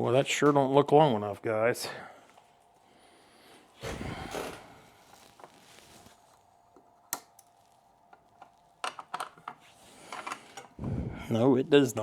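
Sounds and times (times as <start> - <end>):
handling noises of cables and parts: 3.8 - 11.0.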